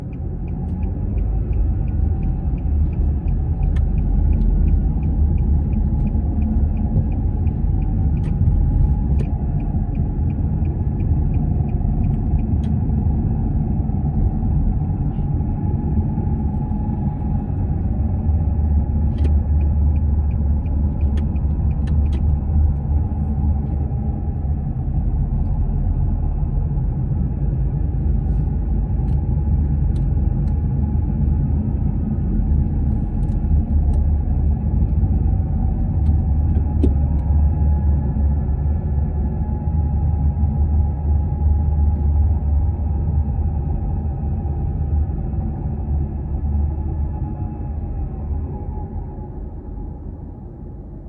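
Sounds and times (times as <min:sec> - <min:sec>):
road and drivetrain rumble: 0:00.0 - 0:51.0
faint whine: 0:36.7 - 0:51.0.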